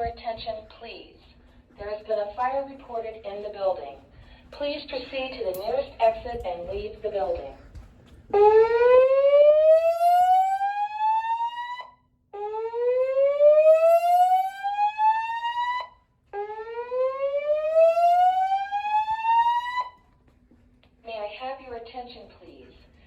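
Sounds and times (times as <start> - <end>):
slow-whoop alarm tone: 8.4 - 20.0.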